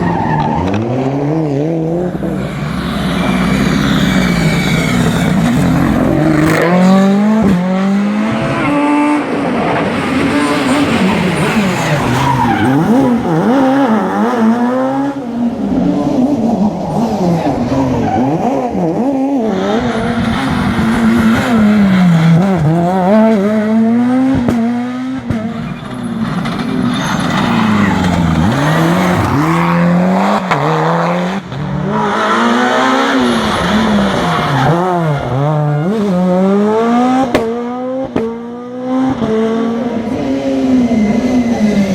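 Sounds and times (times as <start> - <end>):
rally car engines revving: 0.0 - 41.9
tyre squeal: 2.3 - 6.6, 10.0 - 14.2, 25.6 - 29.7.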